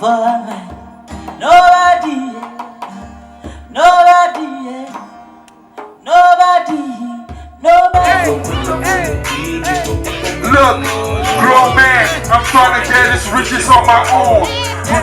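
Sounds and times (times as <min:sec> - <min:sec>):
person singing: 0:00.0 - 0:05.2, 0:06.0 - 0:15.0
low bass notes: 0:08.0 - 0:15.0.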